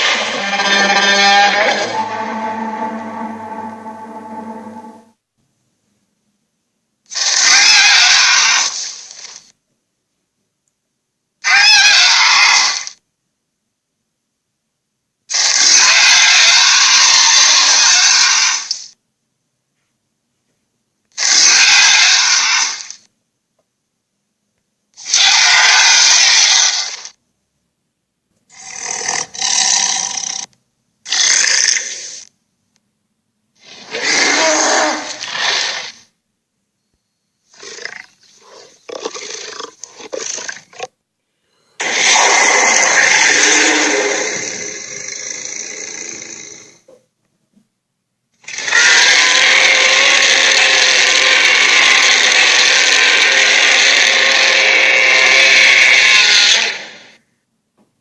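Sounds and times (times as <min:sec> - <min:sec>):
giant creature roaring and growling: 0:00.0 - 0:05.1, 0:33.7 - 0:35.9, 0:41.8 - 0:46.4, 0:48.5 - 0:57.2.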